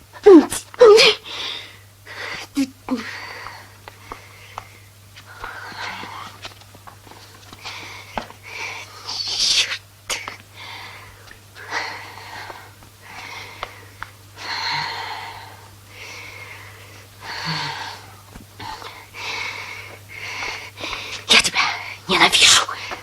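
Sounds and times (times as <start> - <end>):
person sobbing: 0.2 - 1.3, 2.4 - 3.2
sharp breaths: 7.1 - 23.0.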